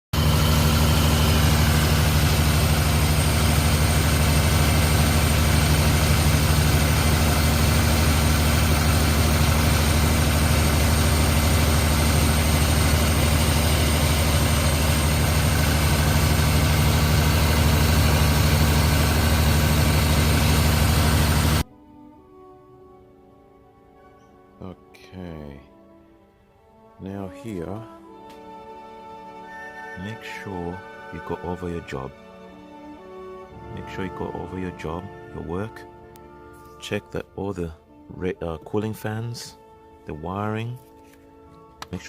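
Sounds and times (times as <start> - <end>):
car engine idling: 0.2 - 21.6.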